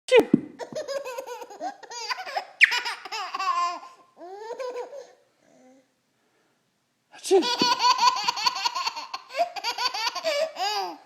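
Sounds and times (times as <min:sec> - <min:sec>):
baby laughing: 0:00.6 - 0:05.2, 0:07.4 - 0:11.0
baby squealing: 0:01.6 - 0:05.1.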